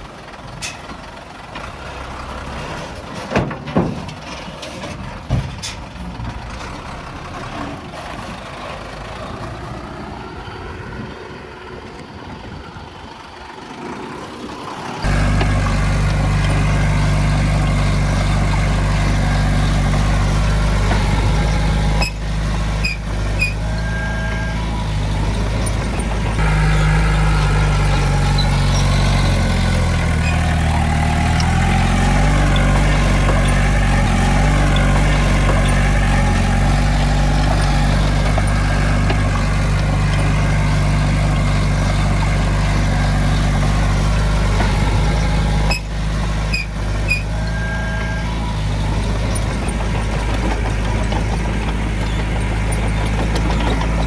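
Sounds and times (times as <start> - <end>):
diesel engine running: 0.0 - 54.0
short clanks: 0.5 - 6.8, 15.0 - 54.0.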